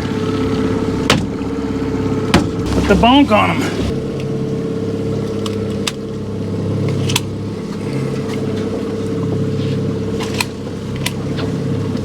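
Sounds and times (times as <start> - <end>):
boat engine humming: 0.0 - 12.0
sharp knocks: 1.0 - 1.5, 2.3 - 4.0.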